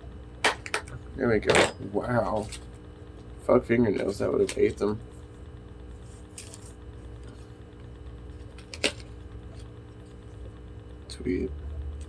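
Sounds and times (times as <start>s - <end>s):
low hum: 0.0s - 12.0s.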